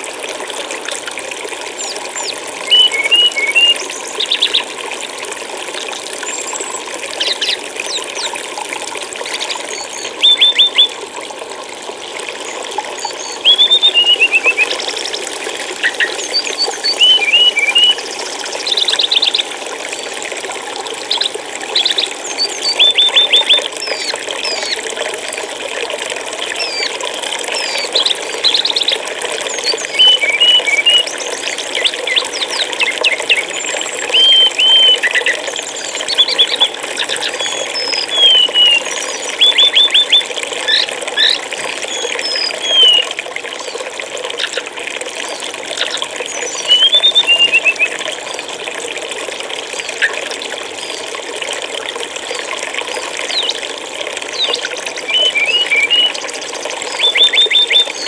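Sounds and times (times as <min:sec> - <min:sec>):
stream water flowing: 0:00.0 - 0:58.0
small birds chirping: 0:01.8 - 0:04.7, 0:13.0 - 0:15.2, 0:15.8 - 0:19.5, 0:21.0 - 0:24.8, 0:26.6 - 0:43.8, 0:45.3 - 0:48.0, 0:53.3 - 0:53.6, 0:54.4 - 0:56.2, 0:56.9 - 0:58.0.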